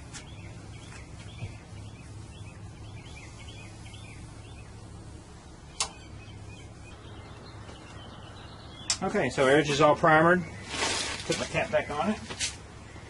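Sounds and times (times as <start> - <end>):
low steady hum: 0.0 - 13.0
small birds chirping: 0.0 - 13.0
sharp click: 5.8 - 6.0.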